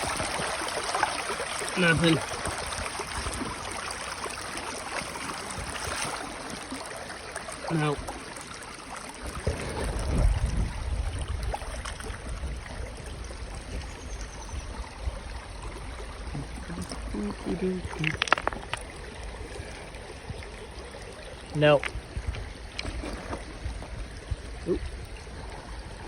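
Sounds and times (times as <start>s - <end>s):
creek water running: 0.0s - 26.0s
low rumble on microphone: 9.2s - 26.0s.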